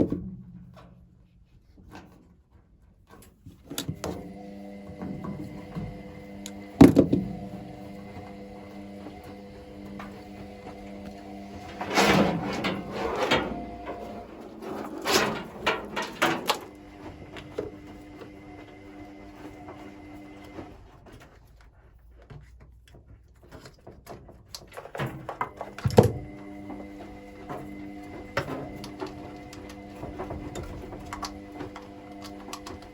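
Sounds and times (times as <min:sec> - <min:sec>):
parts clattering and banging: 0:03.4 - 0:21.7, 0:22.3 - 0:32.9
steady hum: 0:04.1 - 0:20.7.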